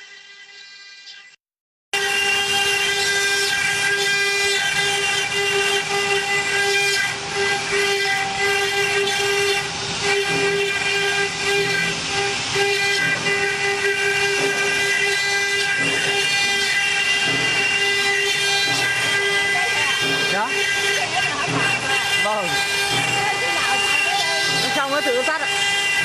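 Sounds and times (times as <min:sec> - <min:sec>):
machine spindle whine cutting stone: 0:13.9 - 0:26.0.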